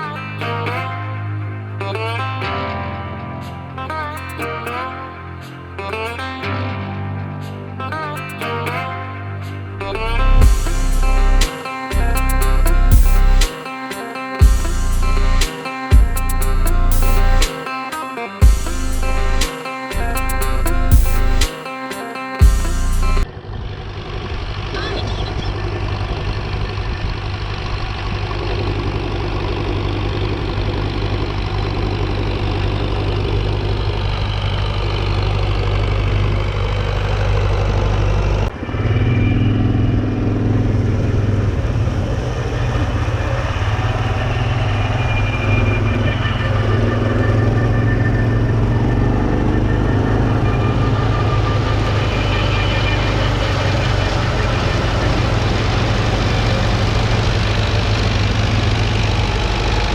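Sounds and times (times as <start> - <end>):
engines running steadily: 9.8 - 13.5, 18.4 - 21.5, 22.4 - 59.9.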